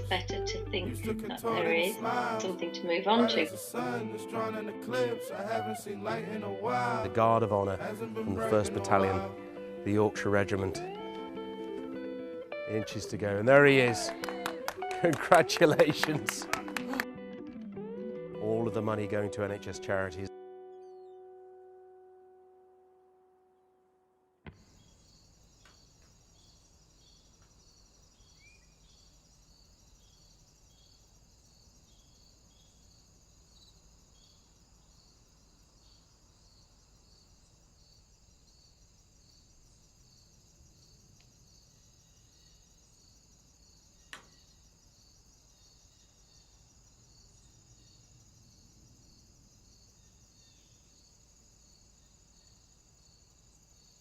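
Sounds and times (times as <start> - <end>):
insect chirping trill: 24.5 - 54.0.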